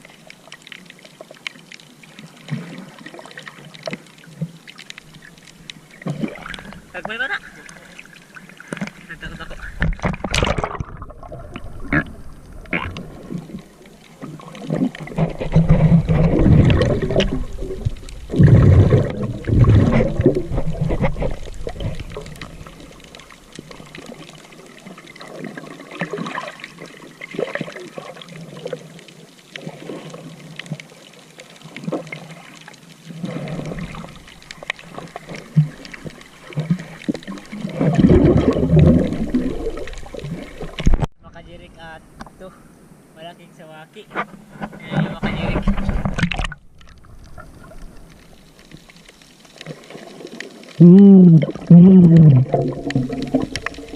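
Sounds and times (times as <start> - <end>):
seawater sloshing and splashing: 2.3 - 29.0, 31.6 - 41.1.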